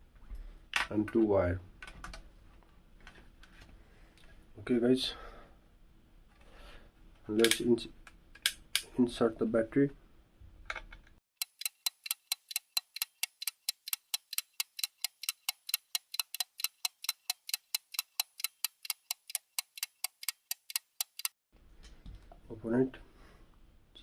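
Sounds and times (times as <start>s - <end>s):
clock-like ticking: 11.4s - 21.4s.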